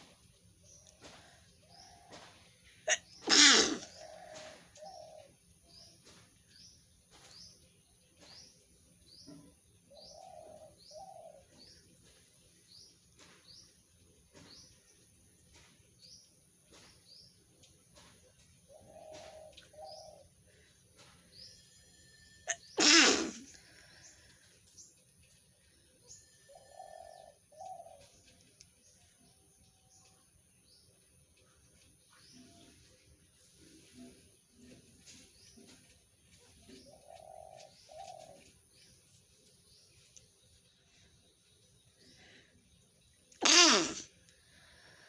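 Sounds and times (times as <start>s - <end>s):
soft low bird calls: 2.8s - 5.9s, 22.5s - 24.4s, 43.3s - 45.0s
person sneezing: 2.9s - 4.0s, 22.5s - 23.5s, 43.4s - 44.0s.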